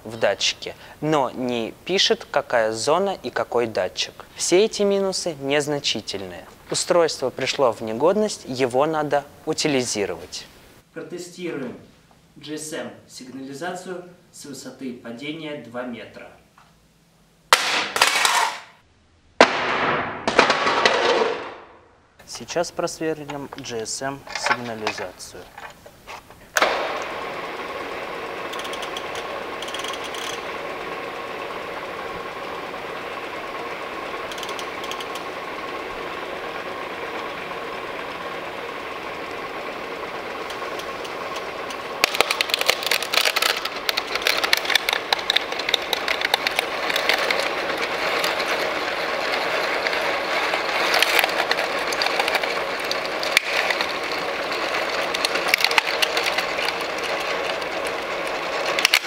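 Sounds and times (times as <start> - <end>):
drill bit clicking through plastic: 28.4 - 30.7, 34.1 - 35.4, 40.3 - 59.0.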